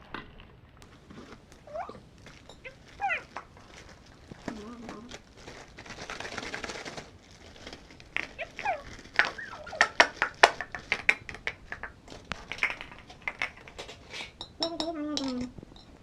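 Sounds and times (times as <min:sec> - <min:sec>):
rustling: 0:00.0 - 0:16.0
small hard objects clicking: 0:00.8 - 0:16.0.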